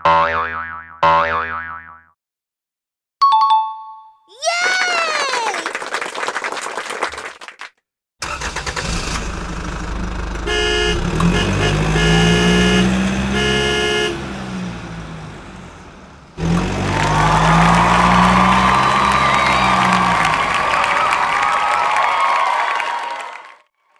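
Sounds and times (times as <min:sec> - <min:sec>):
falling boing: 0:00.0 - 0:02.1
engine running: 0:08.2 - 0:21.5
horn honking: 0:10.4 - 0:15.7, 0:16.4 - 0:21.4.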